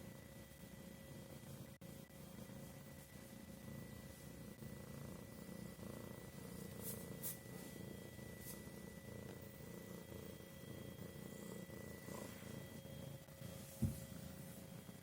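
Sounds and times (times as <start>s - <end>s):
cat purring: 0.0s - 15.0s.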